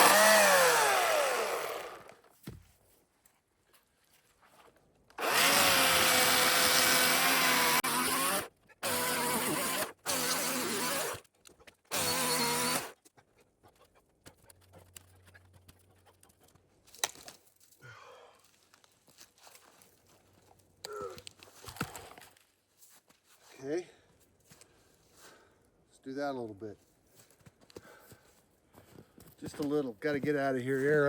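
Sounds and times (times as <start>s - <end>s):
electric chainsaw motor whining: 0.0s - 2.2s, 5.2s - 11.2s, 11.9s - 13.0s.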